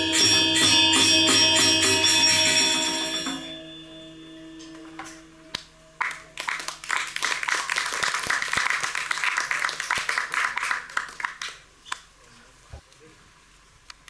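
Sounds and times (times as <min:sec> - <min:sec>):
audience applauding: 0:06.0 - 0:11.6.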